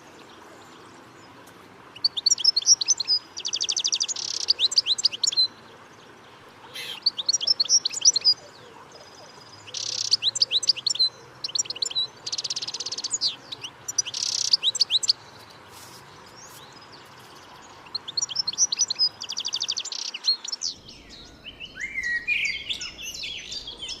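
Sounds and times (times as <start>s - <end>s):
parrot chirping: 6.7s - 8.0s.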